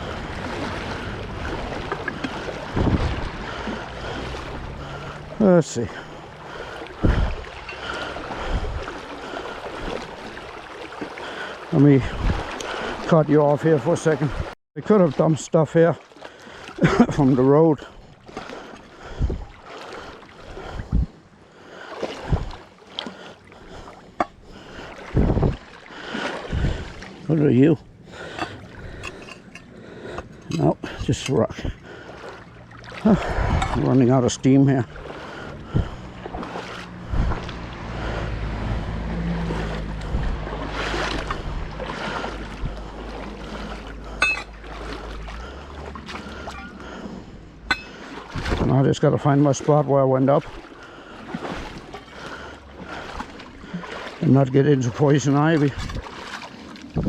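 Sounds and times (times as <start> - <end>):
dull low thumps: 0.0 - 5.4, 6.0 - 9.0, 20.6 - 21.2, 25.1 - 25.7, 34.8 - 46.1
wind rumbling on microphone: 0.0 - 5.4, 6.9 - 7.7, 8.3 - 9.0, 12.0 - 12.6, 19.1 - 19.6, 20.6 - 21.2, 22.2 - 22.6, 25.1 - 25.7, 26.5 - 27.1, 33.0 - 35.0, 35.6 - 43.4, 48.3 - 49.0, 55.6 - 56.2, 56.8 - 57.0
river water rushing: 0.0 - 20.6, 21.3 - 57.0.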